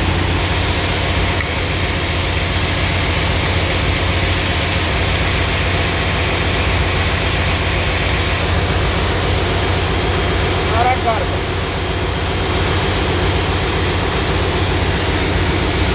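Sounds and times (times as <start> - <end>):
generator engine running: 0.0 - 15.9.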